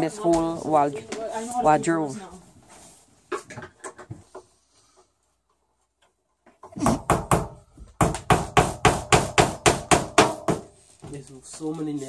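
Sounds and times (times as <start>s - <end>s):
hammer driving nails: 6.7s - 10.7s.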